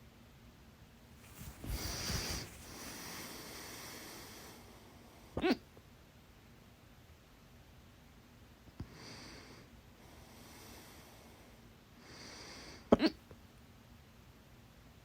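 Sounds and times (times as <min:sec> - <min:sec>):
quiet breaths: 0:01.1 - 0:05.2, 0:08.8 - 0:12.9.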